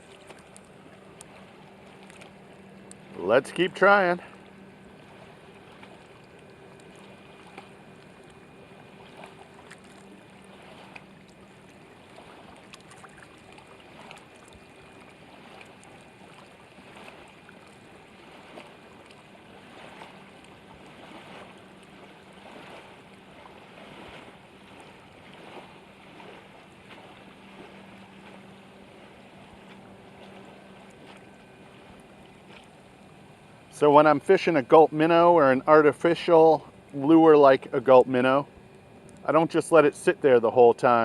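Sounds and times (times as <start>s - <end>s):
distant boat motor hum: 0.0s - 41.0s
water lapping: 0.0s - 41.0s
light ticks: 2.0s - 3.0s, 39.0s - 39.3s.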